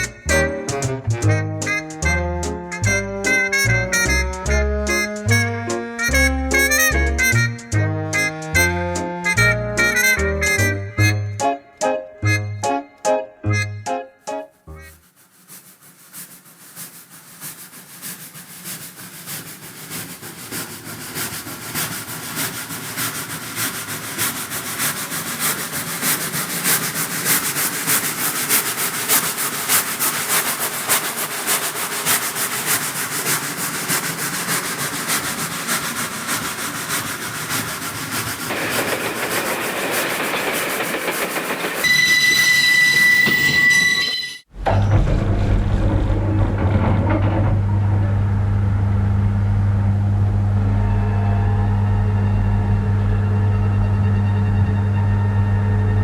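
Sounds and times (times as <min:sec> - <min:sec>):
train wheels clickety-clack: 0:00.0 - 0:10.0, 0:16.2 - 0:43.9
train whistle: 0:00.0 - 0:12.8, 0:38.5 - 0:44.5, 0:50.3 - 0:56.0
hiss: 0:15.2 - 0:41.9.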